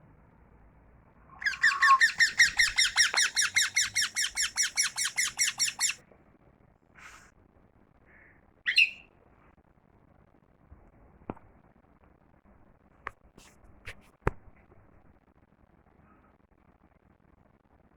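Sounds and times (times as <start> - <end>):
parrot calling rapidly: 1.4 - 6.0, 8.7 - 9.0.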